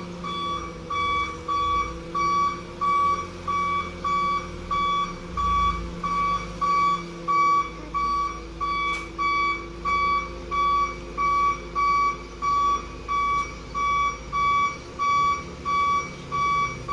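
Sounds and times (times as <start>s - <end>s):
high reversing beep: 0.1s - 16.9s.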